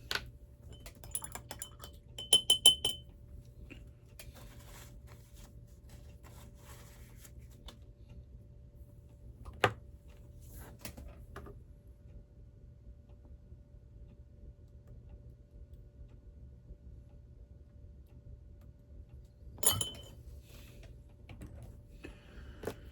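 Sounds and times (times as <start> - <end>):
glass bottle clinking: 0.7 - 3.0, 19.6 - 20.2.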